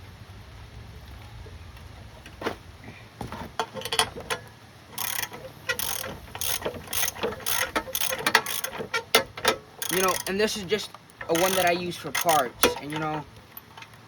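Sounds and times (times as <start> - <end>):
low steady hum: 0.0 - 14.0
sharp mechanical clicks and clatters: 3.6 - 14.0.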